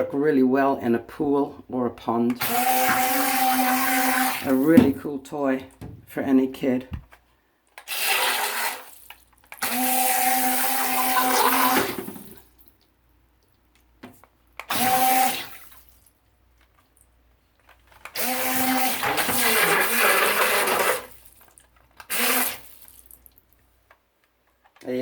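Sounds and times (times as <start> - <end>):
toy boat motor whining: 2.4 - 4.6, 9.6 - 12.0, 14.7 - 15.5, 18.1 - 21.1, 22.1 - 22.6.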